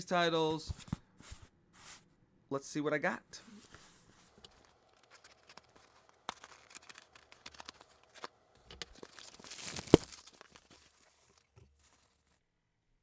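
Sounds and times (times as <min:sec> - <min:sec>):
packaging tearing and crinkling: 0:04.5 - 0:12.4.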